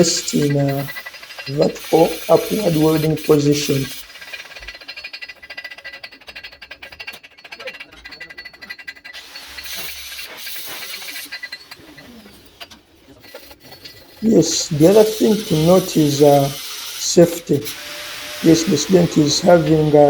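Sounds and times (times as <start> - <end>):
welding arc crackling: 0.0 - 5.2, 9.2 - 11.8, 13.9 - 20.0.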